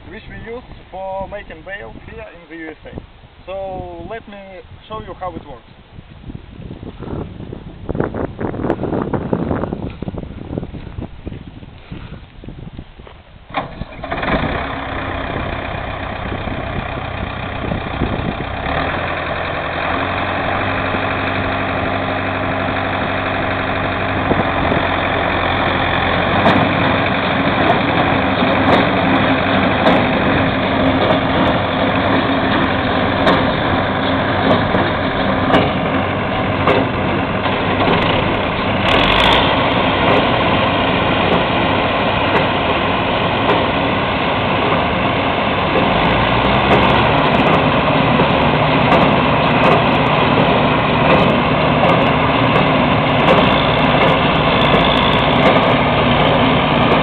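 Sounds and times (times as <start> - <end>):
tractor engine running: 4.9 - 57.0
sharp knocks of baler: 13.5 - 57.0.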